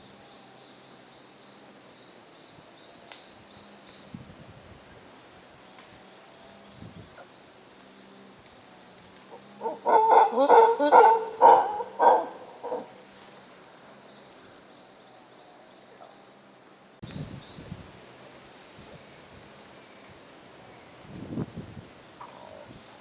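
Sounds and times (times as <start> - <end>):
high insect whine: 0.0 - 23.0
animal hooting calls: 9.6 - 13.0.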